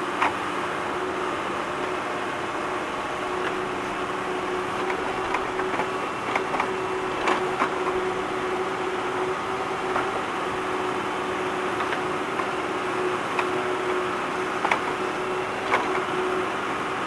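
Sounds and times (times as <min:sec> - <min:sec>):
tractor engine humming: 0:00.0 - 0:17.0
digging knocks and scrapes: 0:03.4 - 0:08.5, 0:09.7 - 0:16.4.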